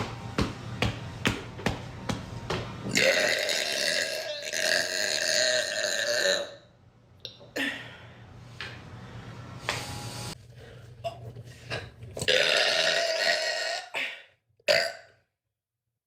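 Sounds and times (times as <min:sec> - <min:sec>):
woman burping: 0:02.9 - 0:06.7, 0:12.3 - 0:15.1.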